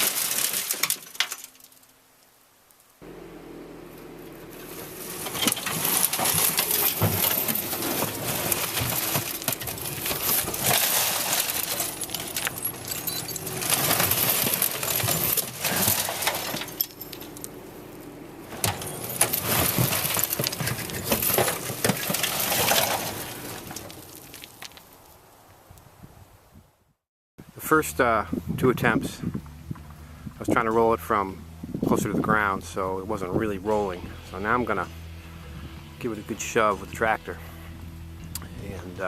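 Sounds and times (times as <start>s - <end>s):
metal toolbox rattling and clanking: 0.0s - 1.6s, 4.6s - 17.6s, 18.5s - 24.4s
steady low hum: 1.0s - 24.3s, 27.5s - 39.0s.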